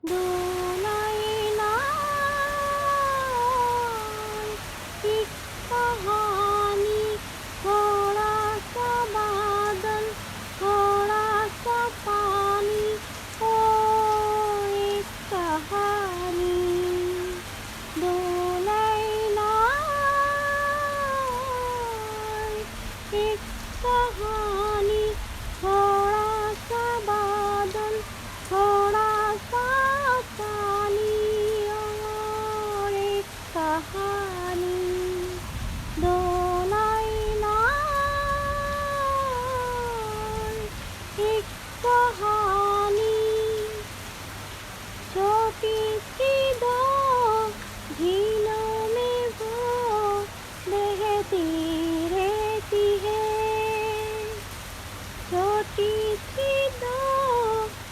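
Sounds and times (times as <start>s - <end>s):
woman humming a slow melody: 0.0s - 44.0s, 45.1s - 54.5s, 55.3s - 57.9s
rain hissing: 0.0s - 57.9s
high voice humming: 36.0s - 43.9s.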